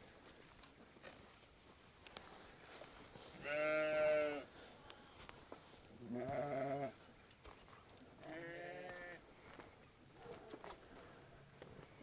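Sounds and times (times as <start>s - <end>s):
sheep bleating: 3.4s - 5.2s, 6.0s - 7.0s, 8.2s - 9.2s.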